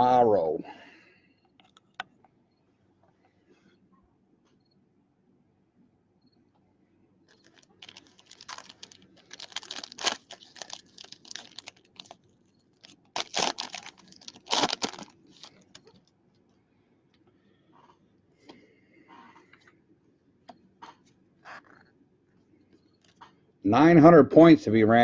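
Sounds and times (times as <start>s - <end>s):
foil wrappers crinkling and tearing: 7.3s - 15.9s.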